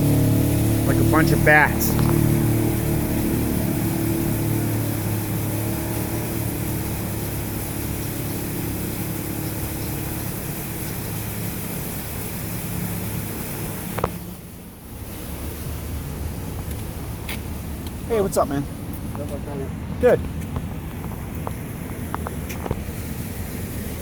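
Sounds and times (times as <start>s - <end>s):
low machine hum: 0.0s - 11.8s
rushing sewer water: 0.0s - 24.0s.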